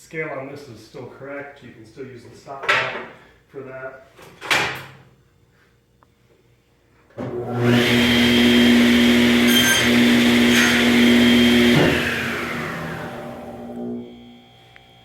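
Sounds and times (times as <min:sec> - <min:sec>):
table saw cutting board: 0:07.2 - 0:15.0
saw whine: 0:07.5 - 0:15.0.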